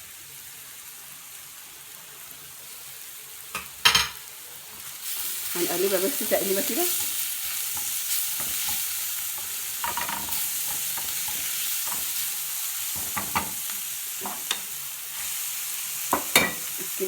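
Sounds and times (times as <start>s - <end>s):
food sizzling in frying pan: 0.0s - 17.0s
spoon knocking against pan: 12.9s - 13.6s, 16.1s - 16.7s.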